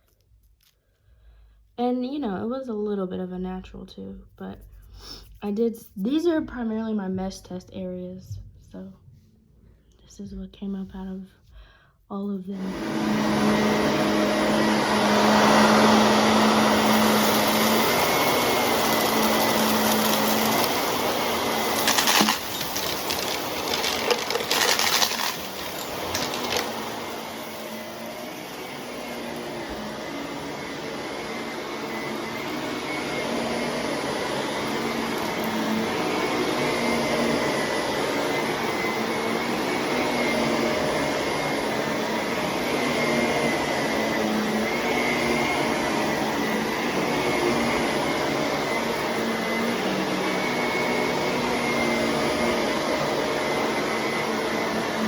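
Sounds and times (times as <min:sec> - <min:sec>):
vacuum cleaner running: 0:12.5 - 0:55.0.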